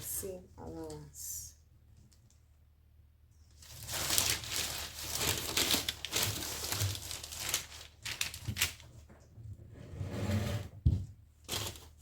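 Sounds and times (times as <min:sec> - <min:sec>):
paper rustling and crinkling: 0:03.5 - 0:09.1, 0:11.4 - 0:12.0.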